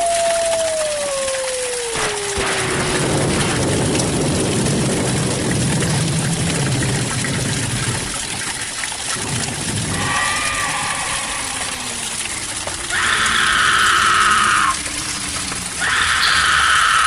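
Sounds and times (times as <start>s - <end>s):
rushing water-like noise: 0.0s - 17.0s
low rumble: 1.8s - 17.0s
faint wavering high tone: 9.9s - 16.8s.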